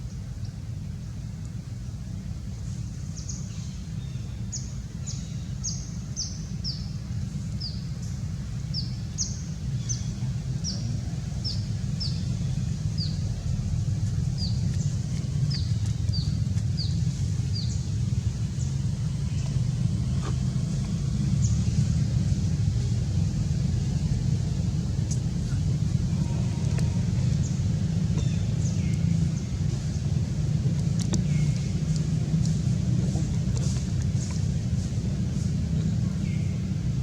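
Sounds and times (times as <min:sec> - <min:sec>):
low rumble: 0:00.0 - 0:37.0
small bird chirping: 0:11.4 - 0:20.5.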